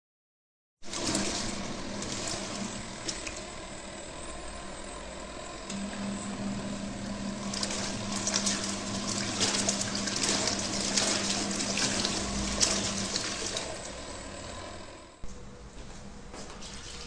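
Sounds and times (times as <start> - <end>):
water sloshing and splashing: 0.8 - 3.7, 5.9 - 14.7, 16.4 - 17.0
washing machine motor hum: 0.8 - 17.0.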